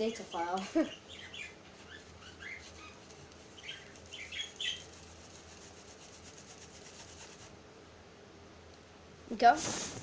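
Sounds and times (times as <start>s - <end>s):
faint steady hum: 0.0s - 10.0s.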